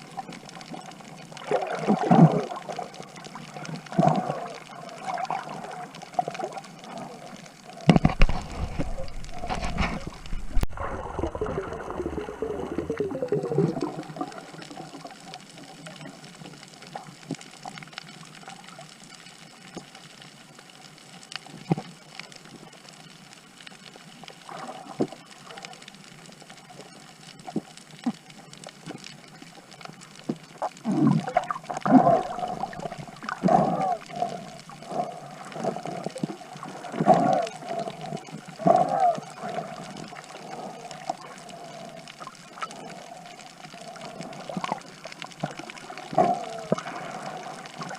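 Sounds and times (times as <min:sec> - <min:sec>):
water splashing and gurgling: 0:00.0 - 0:18.9, 0:24.4 - 0:47.9
rush of bubbles: 0:01.4 - 0:16.2, 0:30.6 - 0:47.9.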